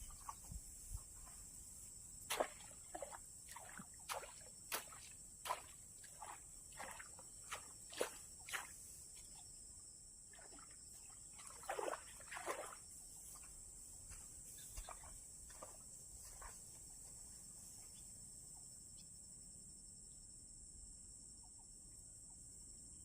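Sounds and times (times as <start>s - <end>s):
high-pitched insect chorus: 0.0s - 23.0s
water splashing: 2.3s - 8.7s, 11.3s - 12.8s.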